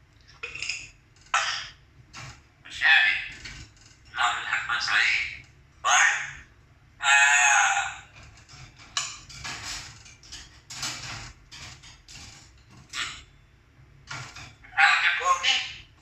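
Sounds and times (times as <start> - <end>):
short knocks and rustles: 8.2 - 13.0.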